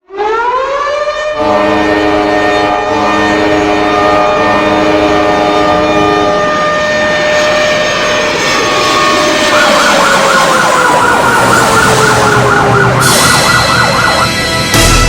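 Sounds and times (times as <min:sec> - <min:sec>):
arena goal horn blasting: 0:01.4 - 0:07.4.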